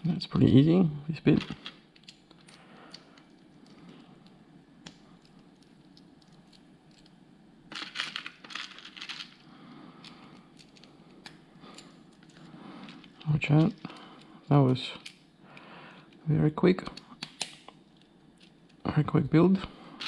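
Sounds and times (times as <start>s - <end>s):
plastic pieces clicking and rattling: 7.7s - 9.4s.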